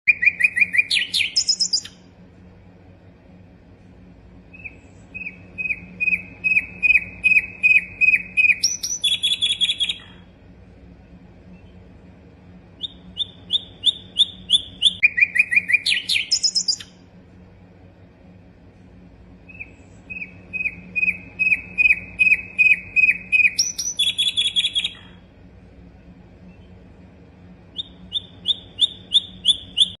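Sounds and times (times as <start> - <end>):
flycatcher singing: 0.1 - 2.1, 4.5 - 10.3, 12.7 - 17.0, 19.4 - 25.2, 27.7 - 30.0.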